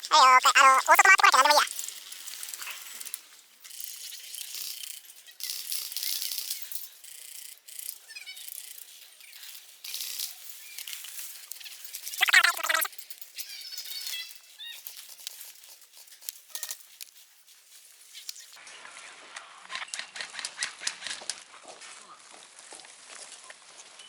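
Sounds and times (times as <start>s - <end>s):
loud call-like sound: 0.0s - 1.7s, 12.2s - 12.9s
leaves and brush rustling: 14.4s - 18.6s.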